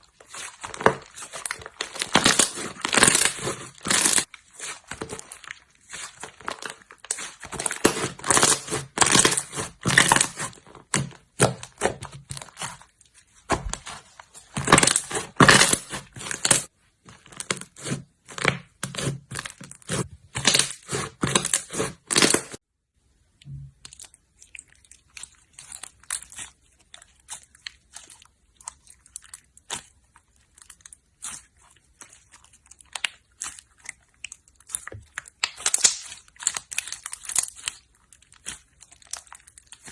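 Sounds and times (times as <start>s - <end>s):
slime crackling and popping: 0.0s - 22.6s, 23.4s - 39.9s.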